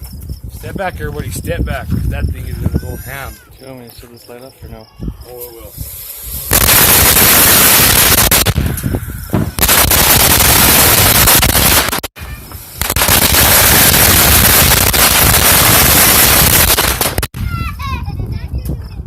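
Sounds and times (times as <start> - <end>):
firecrackers popping: 5.7 - 17.4.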